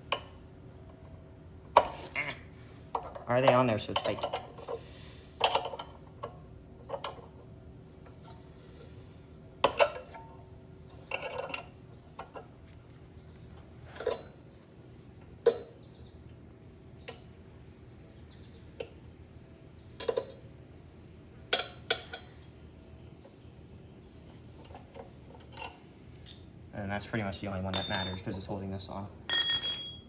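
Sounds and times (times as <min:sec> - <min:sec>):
metal tools clinking: 0:25.6 - 0:26.5, 0:27.7 - 0:28.5, 0:29.3 - 0:30.0.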